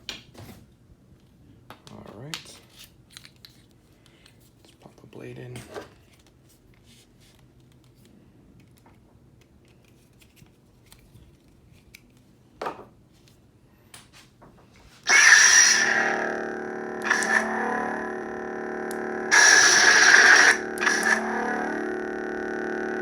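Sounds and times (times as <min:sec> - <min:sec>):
lightsaber ignition sound: 0:15.1 - 0:23.0
steady electronic hum: 0:15.1 - 0:23.0.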